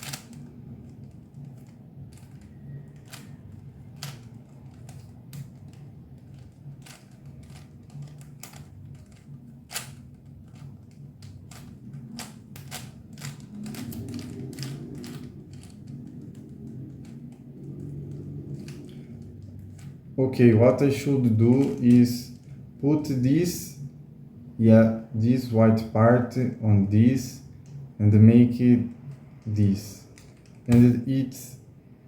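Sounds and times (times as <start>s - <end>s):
plastic puzzle cube clicking: 0.0s - 19.9s
low hum: 0.0s - 32.0s.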